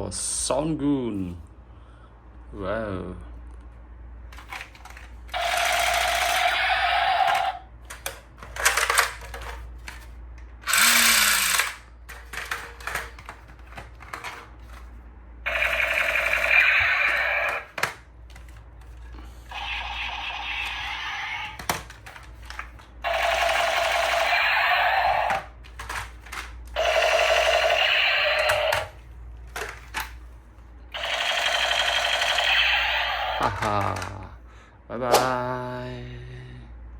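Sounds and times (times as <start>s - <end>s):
toy gun buzzing bursts: 5.3s - 7.6s, 10.6s - 11.9s, 15.5s - 17.8s, 19.5s - 21.7s, 23.0s - 25.5s, 26.8s - 29.0s, 30.9s - 33.7s
toy gun clicks: 5.4s - 7.6s, 10.6s - 11.8s, 15.5s - 17.7s, 23.1s - 26.0s, 26.8s - 28.9s, 31.0s - 33.4s.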